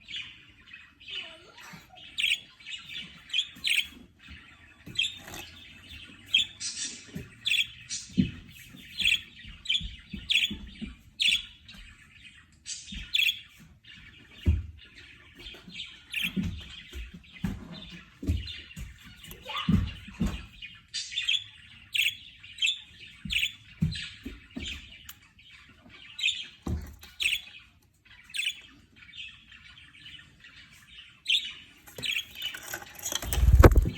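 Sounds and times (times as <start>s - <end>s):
budgerigar chattering and warbling: 1.0s - 4.0s
low thumps and taps: 31.9s - 33.9s.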